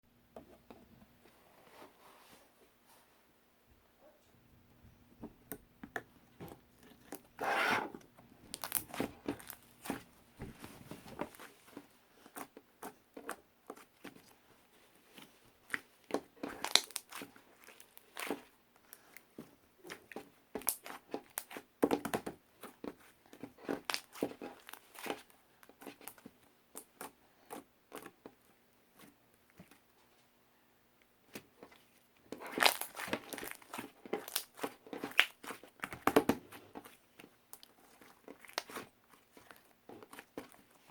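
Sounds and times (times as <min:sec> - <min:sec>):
crinkling and crackling: 0:31.4 - 0:40.9.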